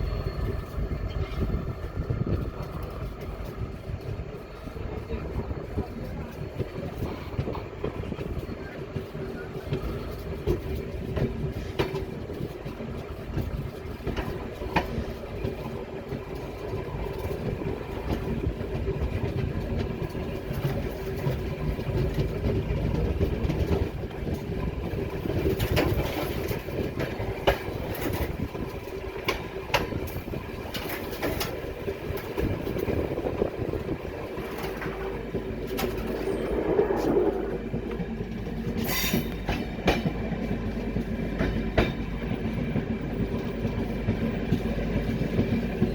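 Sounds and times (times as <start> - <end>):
train rolling past: 0.0 - 45.9
wheels clacking over rail joints: 0.3 - 45.9.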